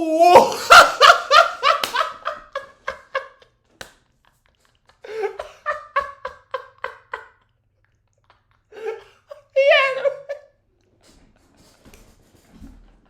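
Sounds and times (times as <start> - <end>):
man laughing hard: 0.1 - 3.4, 5.0 - 7.4, 8.7 - 10.4.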